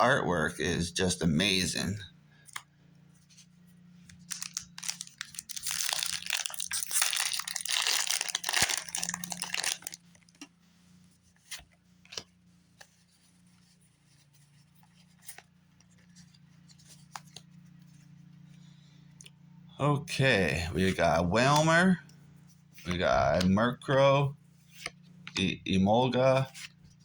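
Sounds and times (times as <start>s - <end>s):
foil wrapper crinkling and tearing: 4.2s - 10.4s.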